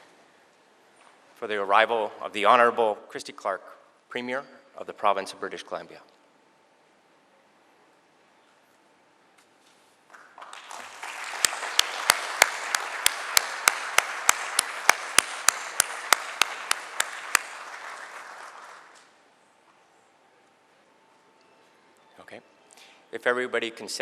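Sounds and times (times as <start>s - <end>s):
audience applauding: 10.1s - 19.2s
sharp evenly spaced cracks: 11.4s - 17.7s.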